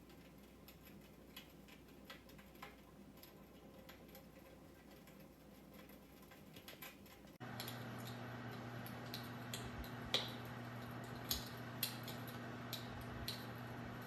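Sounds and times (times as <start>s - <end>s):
fire crackling from speaker: 6.2s - 14.0s
low steady hum: 7.0s - 14.0s.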